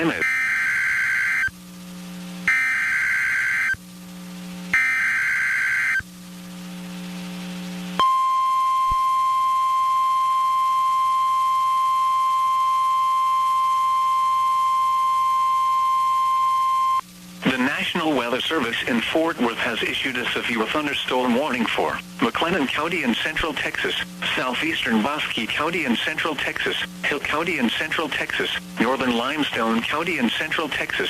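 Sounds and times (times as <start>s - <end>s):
steady warning alarm tone: 0.0s - 1.5s, 2.5s - 3.8s, 4.7s - 6.0s.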